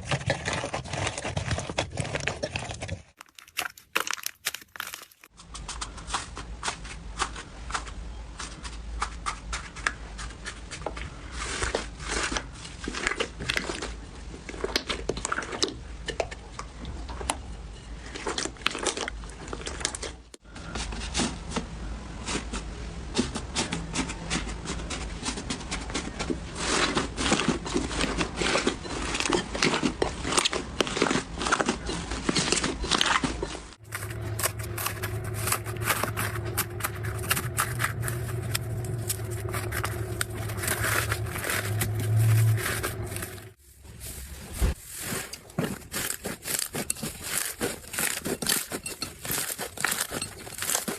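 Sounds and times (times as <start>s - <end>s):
slime crackling and popping: 3.2s - 5.3s
steady low hum: 33.8s - 45.4s.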